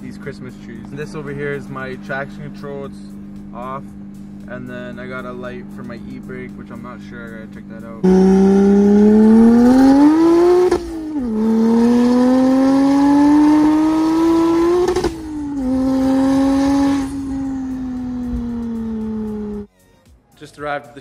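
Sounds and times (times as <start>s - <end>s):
car engine accelerating through gears: 8.0s - 19.7s.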